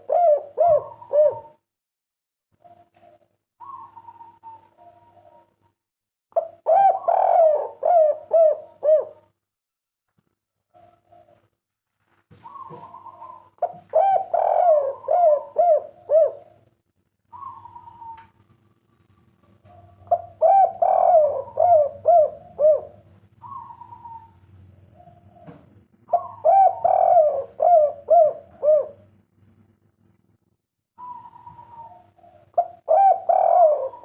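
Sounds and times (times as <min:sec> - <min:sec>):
dove cooing: 0:00.0 - 0:01.6, 0:02.6 - 0:05.7, 0:06.4 - 0:09.3, 0:12.4 - 0:16.7, 0:17.3 - 0:18.6, 0:19.5 - 0:29.2, 0:31.0 - 0:34.0
faint steady hum: 0:12.4 - 0:34.0.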